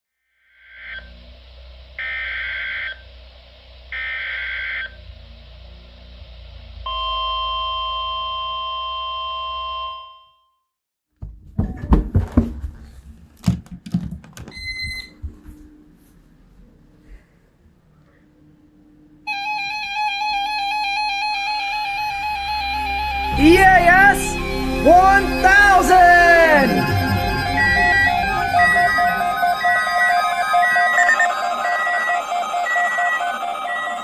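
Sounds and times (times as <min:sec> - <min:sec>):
steady warning alarm tone: 0:00.6 - 0:10.3, 0:19.3 - 0:34.0
low hum: 0:01.0 - 0:08.4, 0:15.1 - 0:31.6
digital data bursts: 0:22.1 - 0:34.0.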